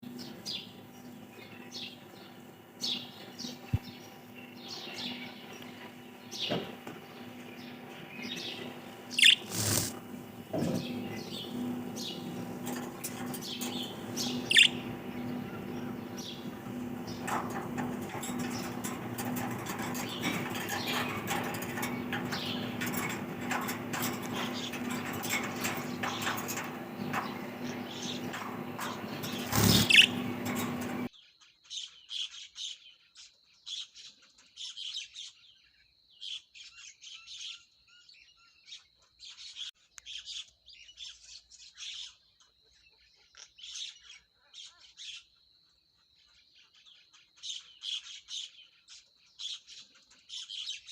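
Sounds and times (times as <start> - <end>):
steady low hum: 0.0 - 31.1
budgerigars chirping: 0.2 - 17.6, 25.9 - 30.9
loud rustle: 9.0 - 10.6, 16.2 - 31.1.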